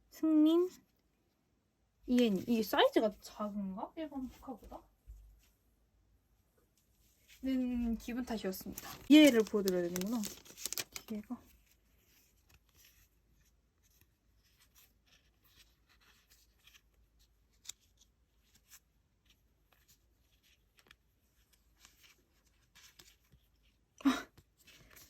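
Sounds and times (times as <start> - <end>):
paper cards rustling: 7.8 - 25.0.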